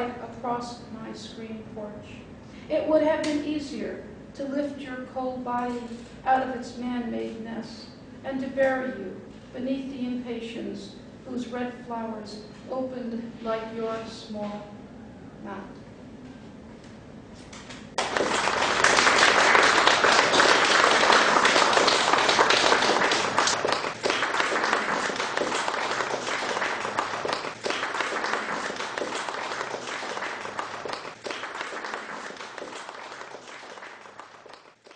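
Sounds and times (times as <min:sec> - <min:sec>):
audience applauding: 0:18.0 - 0:34.9.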